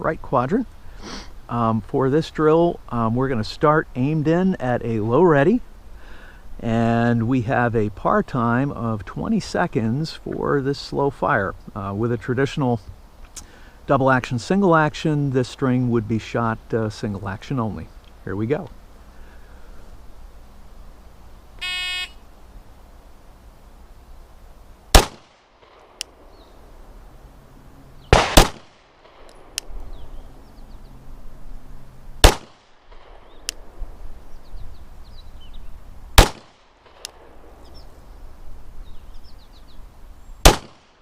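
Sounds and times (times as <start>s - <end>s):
pistol shots: 24.9s - 26.0s, 28.1s - 29.6s, 32.2s - 33.4s, 36.2s - 37.4s, 40.4s - 41.0s.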